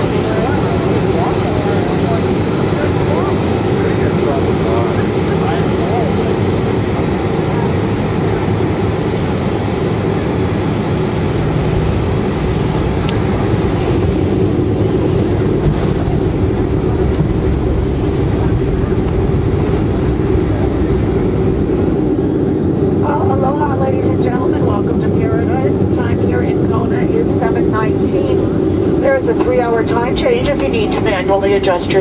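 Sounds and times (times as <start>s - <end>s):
aircraft cabin engine rumble: 0.0s - 32.0s.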